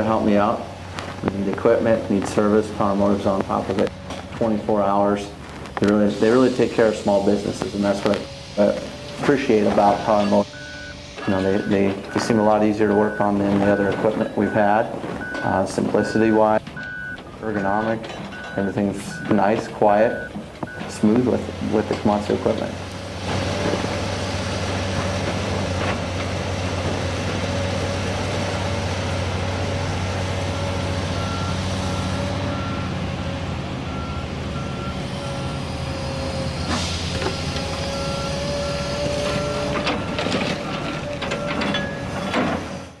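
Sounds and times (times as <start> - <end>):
excavator diesel engine running: 0.0 - 43.0
travel alarm beeping: 10.2 - 21.0, 31.2 - 32.9.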